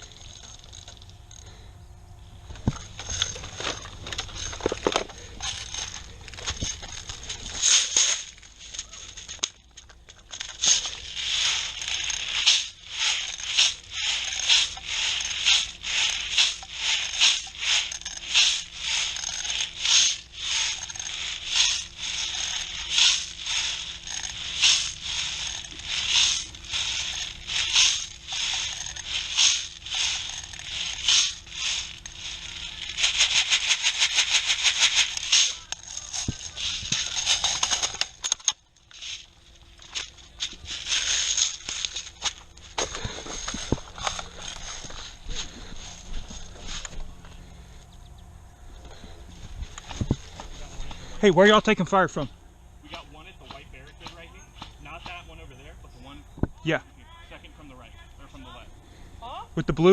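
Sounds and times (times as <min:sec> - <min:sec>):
rapid clicks: 0:02.6 - 0:42.4
footsteps crunching on dry ground: 0:10.3 - 0:38.2, 0:38.8 - 0:47.8, 0:48.8 - 0:51.9.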